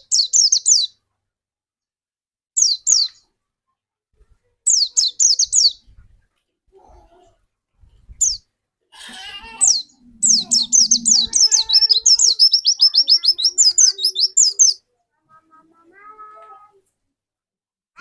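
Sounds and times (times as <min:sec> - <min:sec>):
small bird singing high notes: 0:09.4 - 0:14.8.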